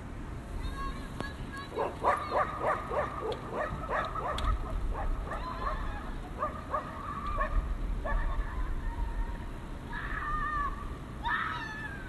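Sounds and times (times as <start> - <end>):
dogs barking: 1.7 - 8.5.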